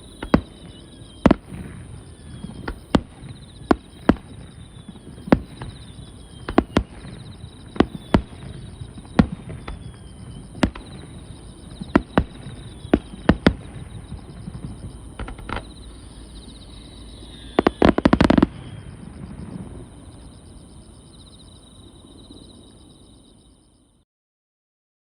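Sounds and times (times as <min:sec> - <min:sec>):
fireworks bangs: 0:00.0 - 0:20.7
faint steady background noise: 0:00.0 - 0:24.0.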